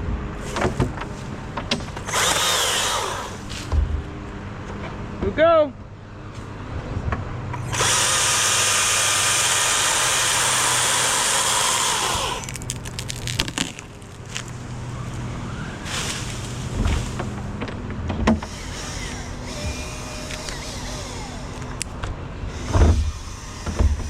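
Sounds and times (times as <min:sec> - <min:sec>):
low engine hum: 0:00.0 - 0:24.0
chainsaw cutting wood: 0:01.7 - 0:03.7, 0:07.6 - 0:14.8, 0:18.2 - 0:24.0
sharp cracks and clicks: 0:11.6 - 0:15.2.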